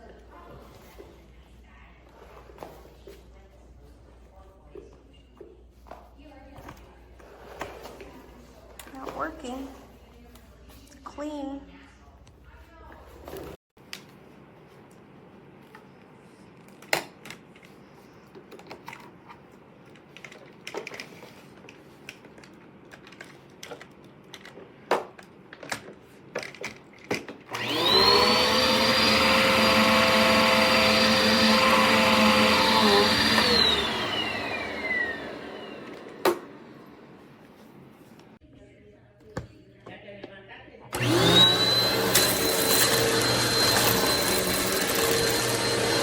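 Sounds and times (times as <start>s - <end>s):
vacuum cleaner motor whine: 27.5s - 37.4s, 40.9s - 46.0s.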